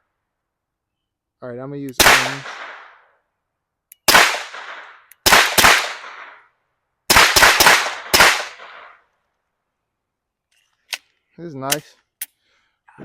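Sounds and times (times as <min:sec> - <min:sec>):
suppressed pistol shots: 0:02.0 - 0:03.0, 0:03.9 - 0:06.4, 0:07.1 - 0:09.0.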